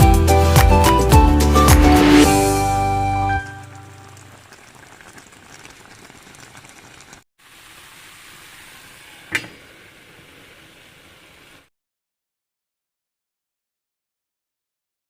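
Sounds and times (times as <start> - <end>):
food sizzling in a pan: 3.4 - 11.7.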